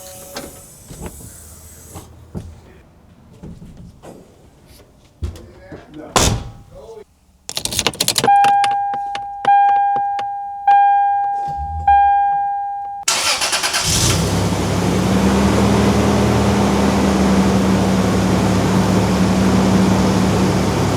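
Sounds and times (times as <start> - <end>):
dashboard warning chime: 8.2 - 13.3
engine cranking: 13.1 - 15.2
car engine idling: 13.1 - 20.9.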